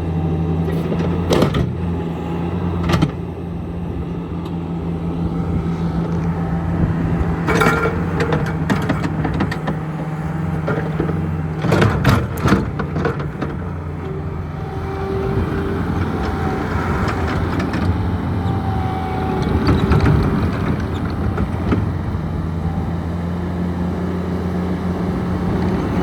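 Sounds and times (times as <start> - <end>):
diesel engine running: 0.0 - 26.0.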